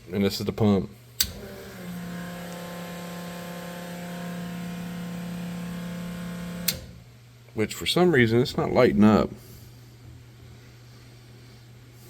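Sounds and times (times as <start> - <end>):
electric pump humming: 1.2 - 7.2
toggle switch click: 6.6 - 7.0.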